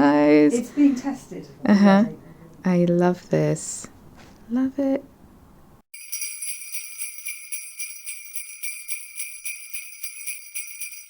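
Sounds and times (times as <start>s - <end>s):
sleigh bells jingling: 5.9s - 11.0s.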